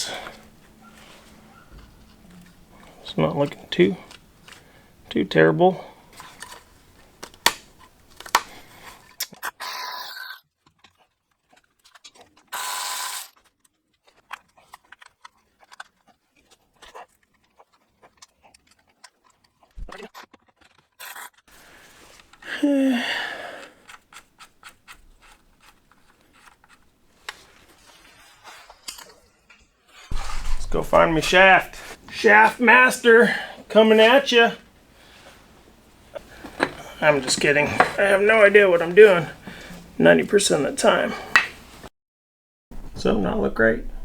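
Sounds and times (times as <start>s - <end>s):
low thump: 30.1s - 30.9s
tools clinking on metal: 36.0s - 40.0s.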